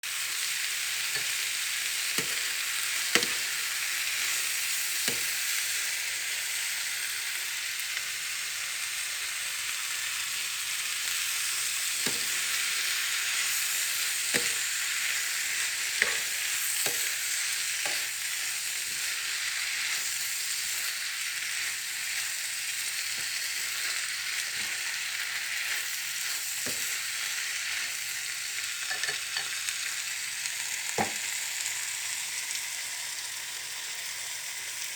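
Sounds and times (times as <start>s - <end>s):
cabbage sizzling in a hot pan: 0.0s - 34.9s
utensil knocking against pan: 31.0s - 31.2s.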